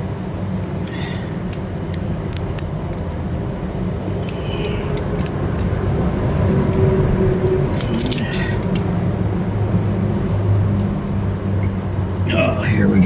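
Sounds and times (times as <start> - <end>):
steady low rumble: 0.0 - 13.0
handling clicks and ticks: 0.6 - 3.5, 4.1 - 9.0, 9.6 - 9.9, 10.6 - 11.0.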